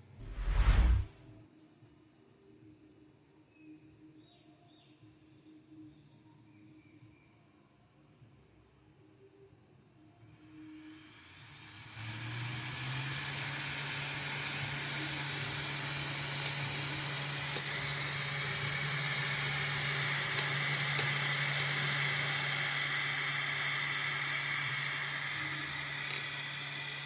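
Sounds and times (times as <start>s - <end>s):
cooling fan whirring: 10.6s - 27.0s.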